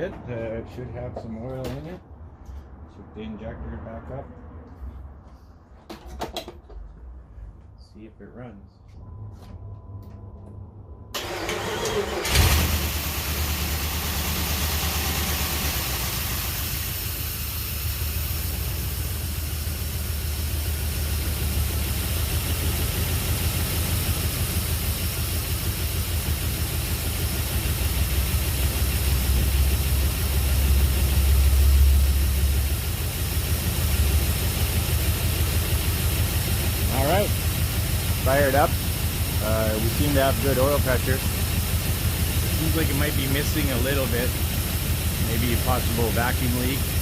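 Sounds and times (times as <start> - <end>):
engine cranking on starter: 11.2 - 16.6
car engine idling: 11.2 - 47.0.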